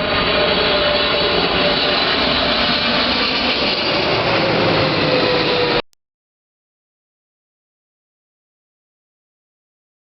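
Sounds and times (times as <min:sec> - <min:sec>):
jet airliner passing overhead: 0:00.0 - 0:05.9.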